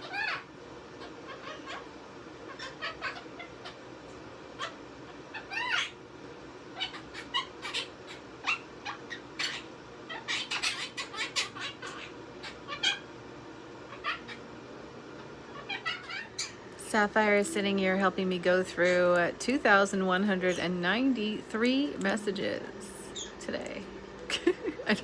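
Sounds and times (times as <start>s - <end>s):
parrot chirping and squawking: 0.0s - 3.9s, 4.5s - 13.2s, 13.9s - 14.5s, 15.5s - 16.7s, 22.4s - 24.6s.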